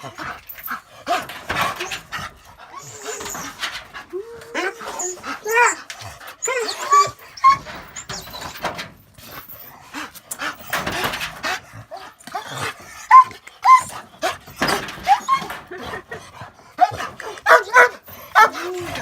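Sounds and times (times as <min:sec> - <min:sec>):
dog whining and yelping: 0:01.6 - 0:08.7, 0:11.9 - 0:16.0, 0:16.8 - 0:19.0.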